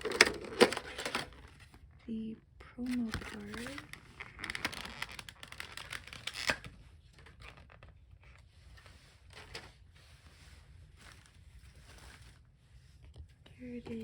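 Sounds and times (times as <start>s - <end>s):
plastic packaging crinkling and tearing: 2.8s - 7.9s.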